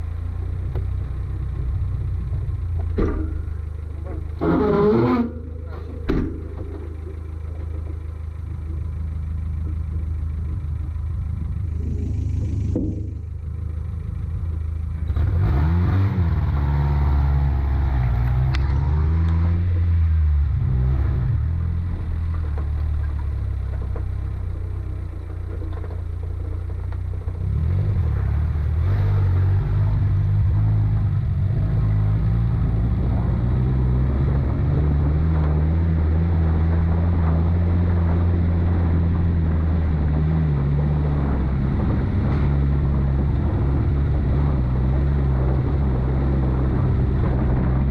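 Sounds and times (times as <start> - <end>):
vehicle engine revving under load: 0.0 - 7.3, 15.0 - 25.1, 27.3 - 47.9.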